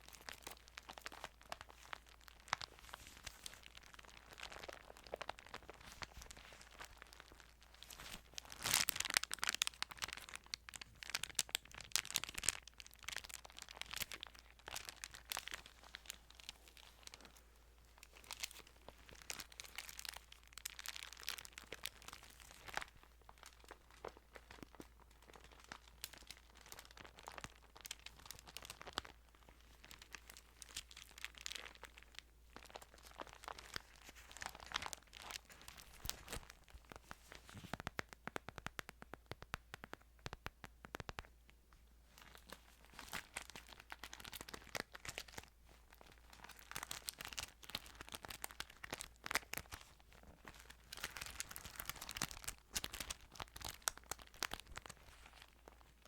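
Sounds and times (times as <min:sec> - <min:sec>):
thin pages rustling and turning: 0:02.6 - 0:09.2, 0:33.2 - 0:39.0.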